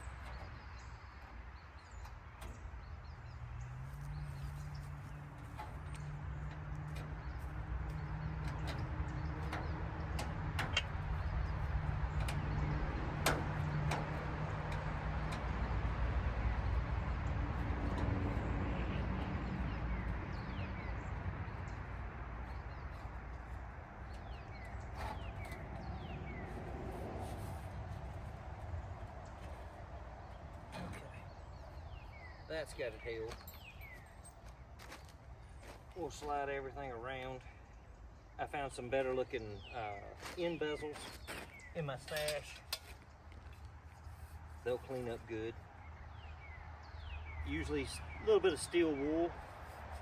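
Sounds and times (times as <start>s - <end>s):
bird chirps: 29.3s - 35.0s, 44.1s - 49.3s.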